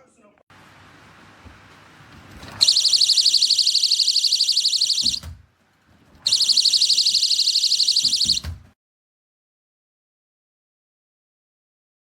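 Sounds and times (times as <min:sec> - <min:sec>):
shrill pulsing alarm siren: 0:02.6 - 0:05.3, 0:06.2 - 0:08.6.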